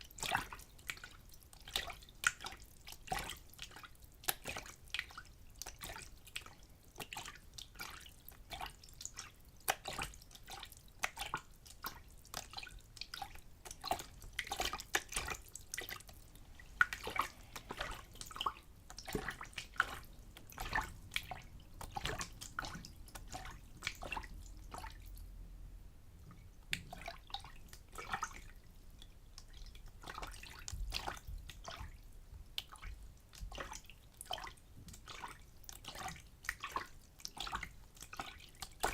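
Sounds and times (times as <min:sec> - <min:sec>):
water splashing in a bin: 0:00.0 - 0:25.2, 0:26.6 - 0:28.6, 0:29.2 - 0:38.9.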